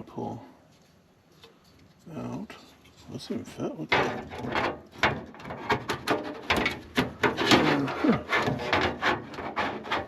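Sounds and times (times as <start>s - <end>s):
fan knocking and scraping on case: 3.9s - 10.0s.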